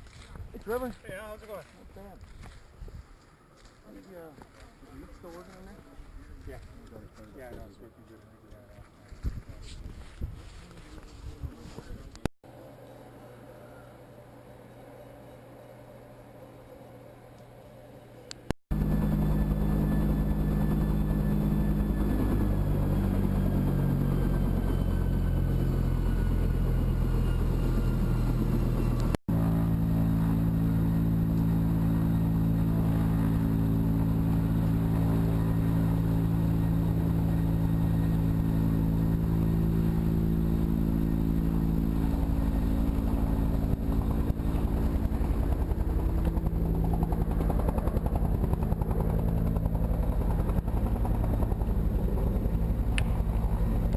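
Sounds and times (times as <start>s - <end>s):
engine running steadily: 18.1s - 53.9s.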